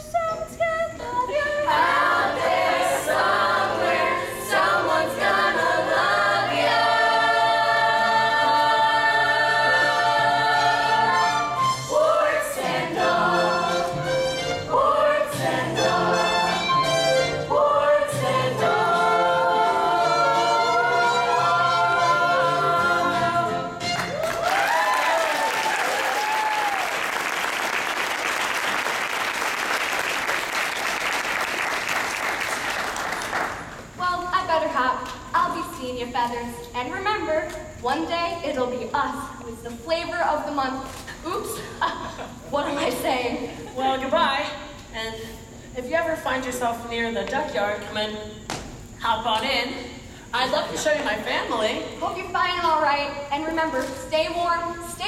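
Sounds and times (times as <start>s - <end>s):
chorus singing with accompaniment: 1.0s - 24.2s
audience applause: 24.0s - 33.7s.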